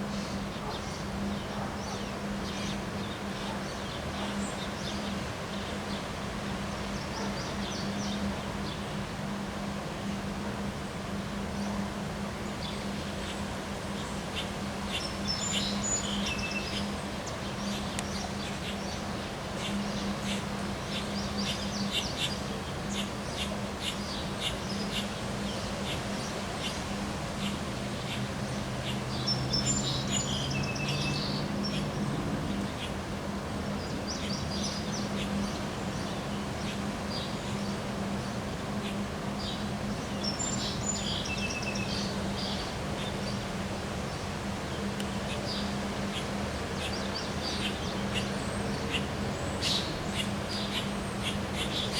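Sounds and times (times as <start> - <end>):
constant low hum: 0.0 - 51.9
outdoor background noise: 0.0 - 51.9
songbird singing: 14.0 - 51.9.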